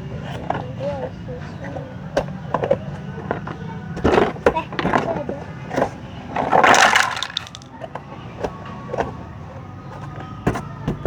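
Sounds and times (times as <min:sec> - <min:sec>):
plastic toy parts clicking: 0:05.8 - 0:08.5.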